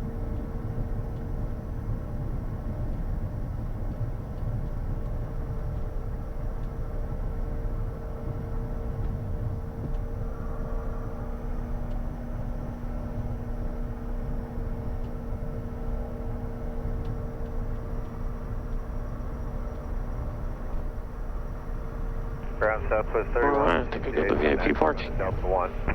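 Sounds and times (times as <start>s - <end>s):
jet engines rumbling: 0.0s - 25.9s
lower hum: 0.0s - 25.9s
steady engine hums: 0.0s - 25.9s.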